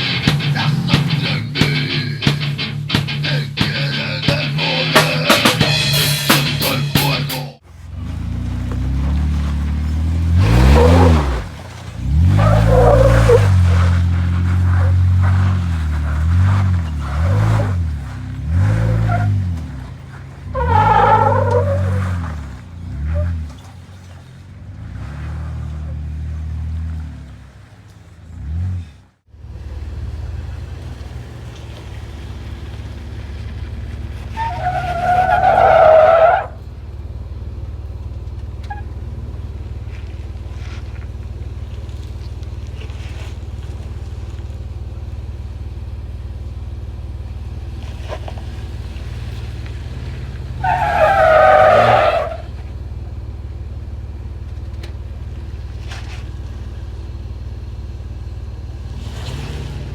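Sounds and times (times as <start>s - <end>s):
off-road vehicle engine running: 0.0s - 59.9s
loud squeal: 12.2s - 17.7s, 34.4s - 36.6s, 50.6s - 52.5s.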